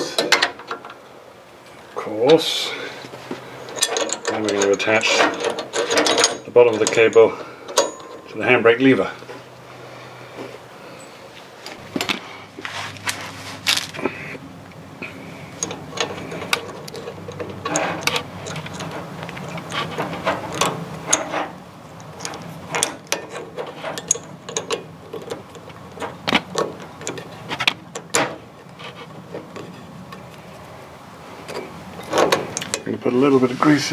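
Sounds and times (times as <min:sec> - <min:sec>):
metallic clicks and clinks: 0:03.6 - 0:09.2.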